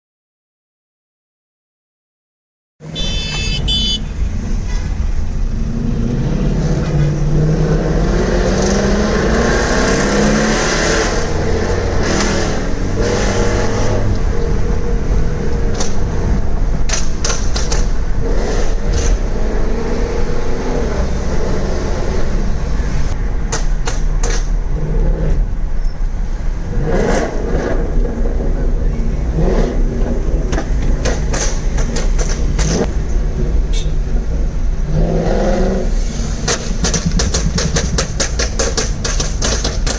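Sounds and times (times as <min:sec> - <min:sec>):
car engine revving: 0:02.8 - 0:23.1
exhaust pops and cracks: 0:36.5 - 0:39.9.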